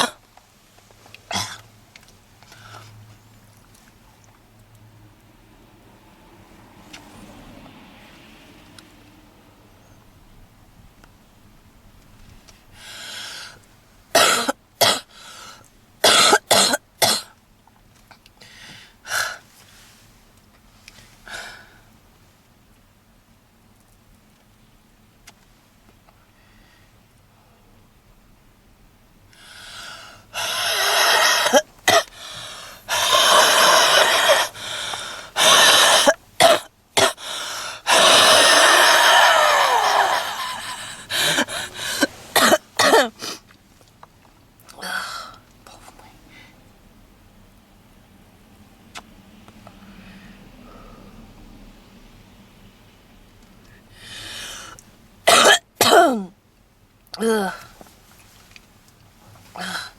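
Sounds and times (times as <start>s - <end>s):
woman coughing: 0.0s - 0.2s, 1.3s - 1.6s, 14.2s - 15.1s, 16.0s - 17.3s, 30.7s - 32.1s, 32.9s - 34.6s, 35.4s - 37.2s, 37.9s - 43.2s, 55.3s - 56.3s
woman breathing: 12.7s - 13.6s, 15.1s - 15.7s, 18.4s - 19.5s, 29.3s - 36.1s, 37.0s - 42.4s, 49.8s - 51.4s, 53.8s - 54.8s.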